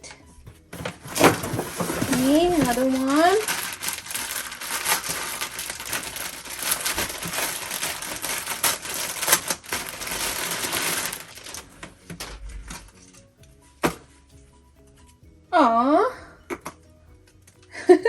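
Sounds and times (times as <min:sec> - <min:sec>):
faint background music: 0:00.0 - 0:18.0
packaging crinkling and rustling: 0:00.7 - 0:13.2.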